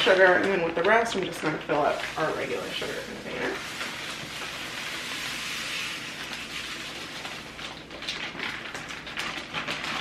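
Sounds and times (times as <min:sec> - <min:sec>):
sugar pouring: 0:01.7 - 0:09.0.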